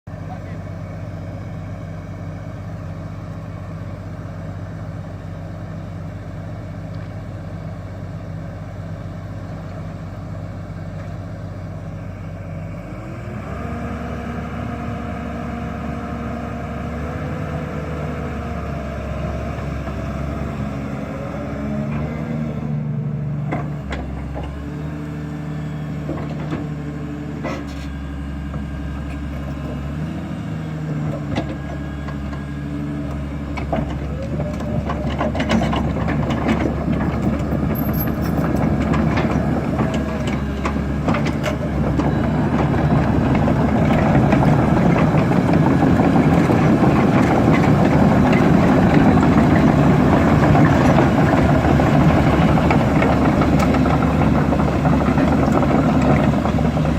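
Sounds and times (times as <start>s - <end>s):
excavator diesel engine running: 0.1s - 56.9s.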